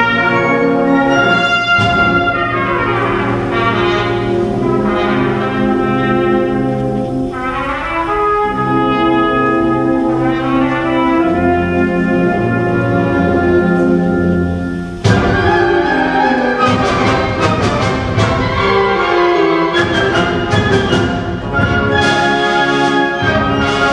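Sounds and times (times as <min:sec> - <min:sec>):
trumpet: 0:00.0 - 0:23.9
wind band brass chords: 0:00.0 - 0:23.9
sharp percussion strikes: 0:01.1 - 0:03.7.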